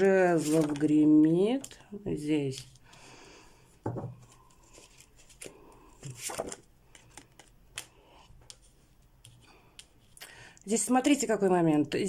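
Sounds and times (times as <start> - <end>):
cards rustling: 0.0 - 1.8, 4.2 - 10.3.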